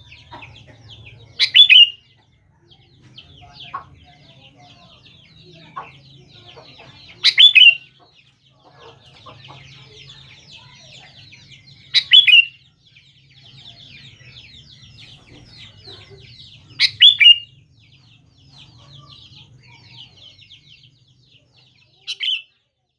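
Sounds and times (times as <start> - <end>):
bird whistled calls: 16.8 - 17.5.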